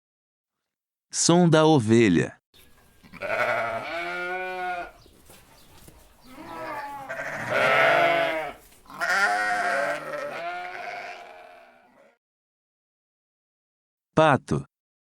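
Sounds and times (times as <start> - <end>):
sheep bleating: 3.0 - 5.0, 6.2 - 12.2.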